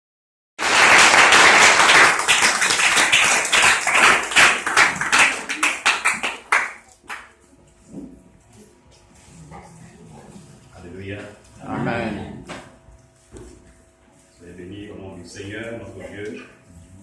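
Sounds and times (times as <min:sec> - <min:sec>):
congregation clapping: 0:00.6 - 0:07.4.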